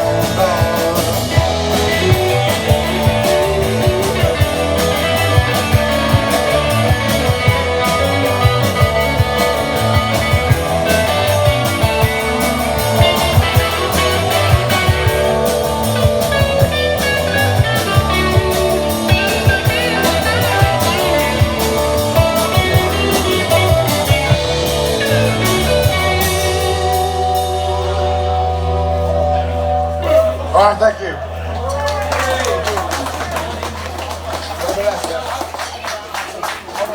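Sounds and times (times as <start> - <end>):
drum-kit beat: 0.0 - 28.0
electric guitar: 0.0 - 30.5
rock band playing live: 0.0 - 36.9.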